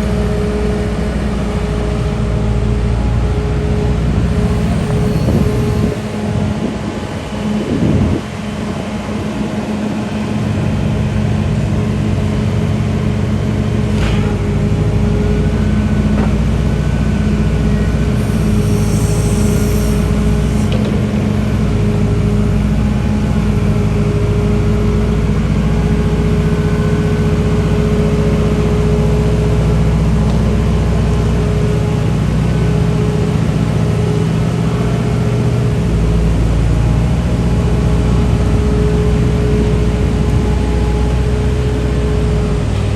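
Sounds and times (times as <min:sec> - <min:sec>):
steady whine: 0:00.0 - 0:12.9, 0:13.9 - 0:42.9
diesel engine running: 0:00.0 - 0:42.9
short high hiss: 0:18.1 - 0:21.5.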